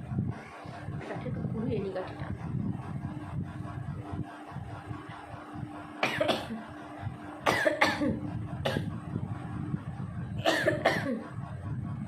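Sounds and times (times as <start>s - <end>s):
woman coughing: 6.0s - 6.6s, 7.5s - 8.9s, 10.4s - 11.3s.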